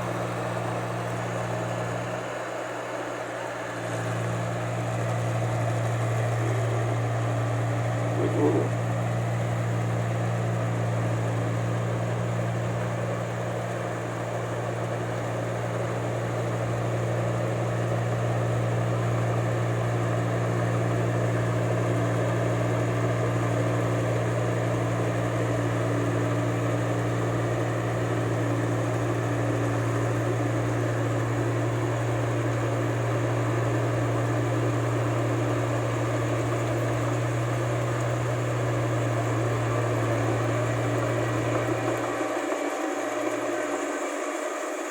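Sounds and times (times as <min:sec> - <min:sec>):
combine harvester engine drone: 0:00.0 - 0:44.9.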